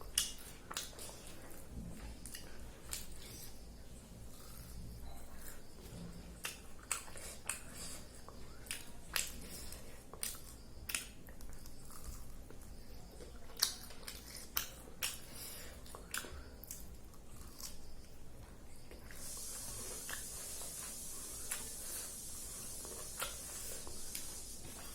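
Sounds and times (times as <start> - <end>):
person chewing with mouth smacks: 0.0 - 24.9.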